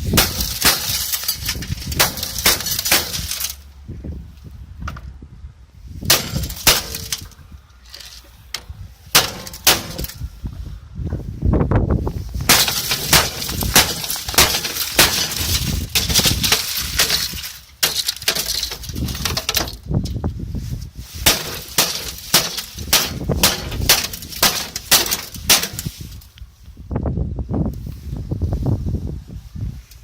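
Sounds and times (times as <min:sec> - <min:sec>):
glass being smashed: 0:00.0 - 0:03.6, 0:06.1 - 0:07.3, 0:09.2 - 0:10.2, 0:12.5 - 0:19.8, 0:21.2 - 0:26.0.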